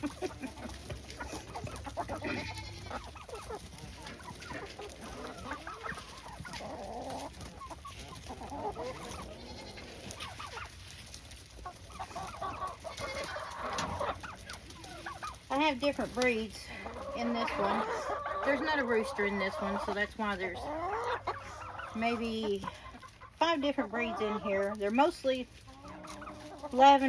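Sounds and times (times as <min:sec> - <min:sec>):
hens clucking: 0:00.0 - 0:27.0.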